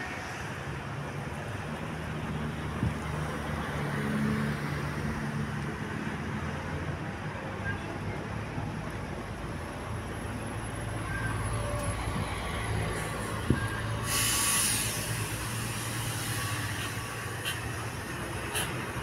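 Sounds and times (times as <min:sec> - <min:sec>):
bus engine idling: 0:08.8 - 0:19.0
compressed air hissing: 0:14.0 - 0:17.6.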